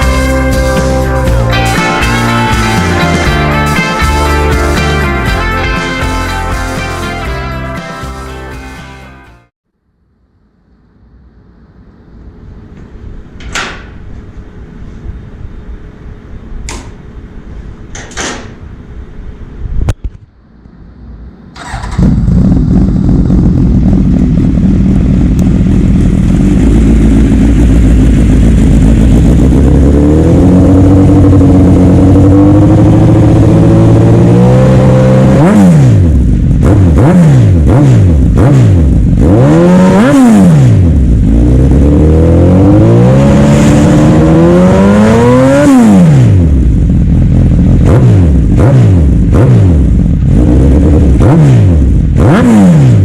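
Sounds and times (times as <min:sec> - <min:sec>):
motorcycle engine idling: 0:21.6 - 0:30.0, 0:46.5 - 0:50.4
motorcycle engine revving: 0:21.6 - 0:53.0.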